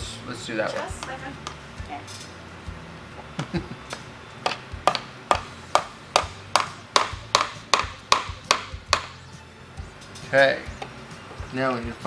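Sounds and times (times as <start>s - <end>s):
small hammer tapping a nail: 4.4s - 9.2s.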